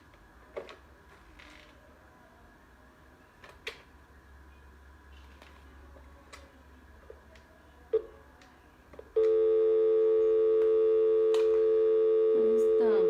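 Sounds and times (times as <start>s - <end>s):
telephone line tone: 9.2s - 13.0s.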